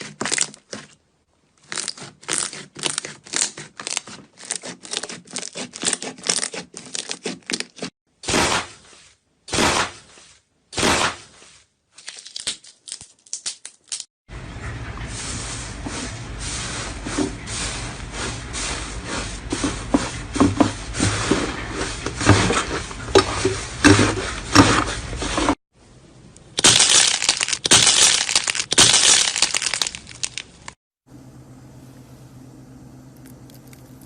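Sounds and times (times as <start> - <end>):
low hum: 31.1 - 34.0.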